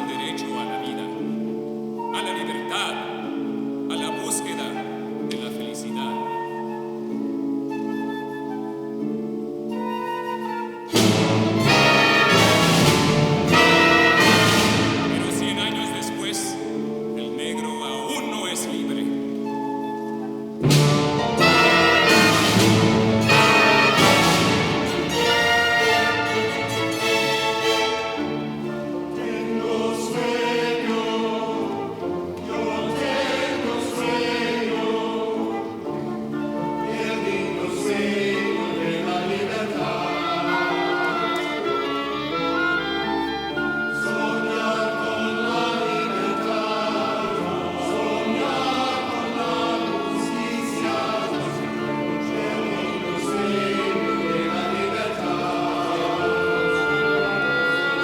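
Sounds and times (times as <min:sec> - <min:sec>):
choir singing: 0:00.0 - 0:58.0
orchestra playing held chords: 0:10.9 - 0:19.4, 0:20.4 - 0:58.0.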